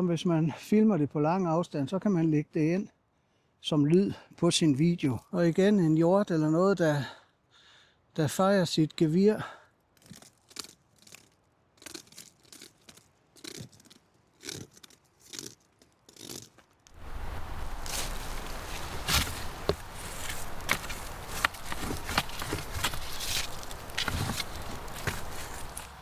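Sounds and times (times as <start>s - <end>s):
rustling with sharp cracks: 9.9s - 26.0s
rasping scrape strokes: 10.0s - 26.0s.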